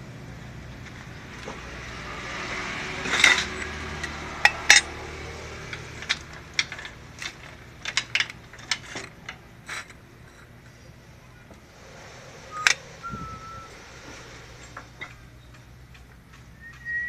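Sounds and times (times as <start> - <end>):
low motor hum: 0.0 - 17.0
metal tools clinking: 3.0 - 10.7.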